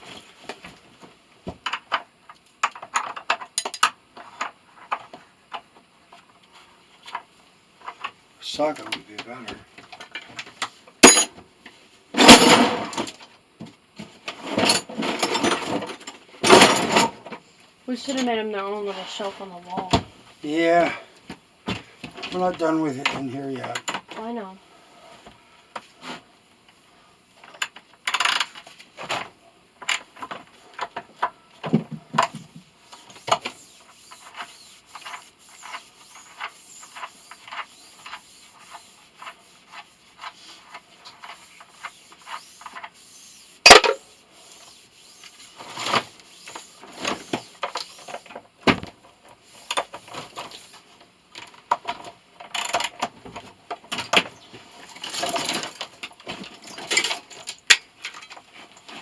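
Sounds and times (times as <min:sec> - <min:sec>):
hand tools clinking on metal: 0:11.0 - 0:11.3.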